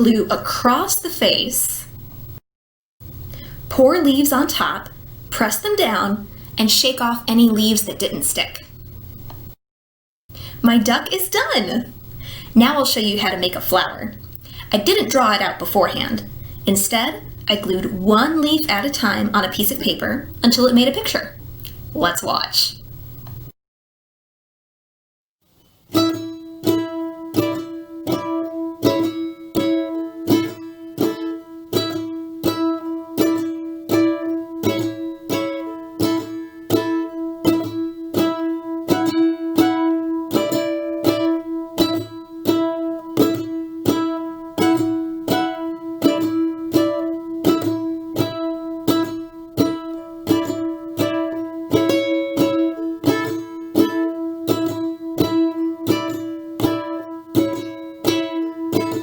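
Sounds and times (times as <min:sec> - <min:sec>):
strummed string instrument music: 0:25.8 - 0:59.0.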